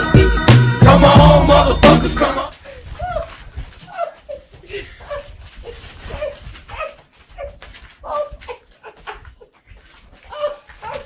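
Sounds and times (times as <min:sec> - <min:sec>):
dog whining and yipping: 0:05.2 - 0:08.5.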